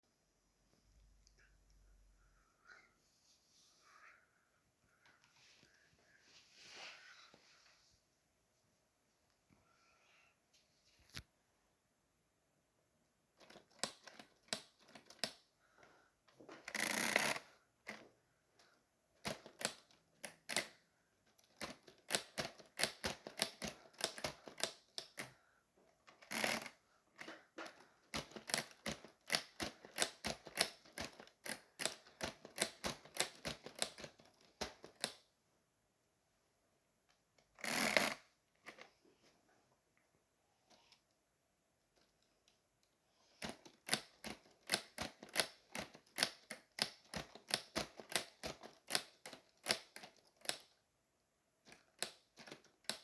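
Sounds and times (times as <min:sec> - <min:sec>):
plastic typewriter keys clacking: 0:13.4 - 0:15.4, 0:21.4 - 0:25.3, 0:26.1 - 0:35.2, 0:43.4 - 0:50.8, 0:51.7 - 0:53.0.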